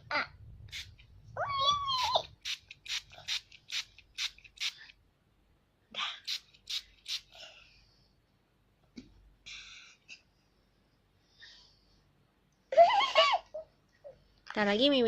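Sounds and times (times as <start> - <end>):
spray bottle hissing: 0.7 - 1.0, 2.0 - 4.9, 6.3 - 7.4.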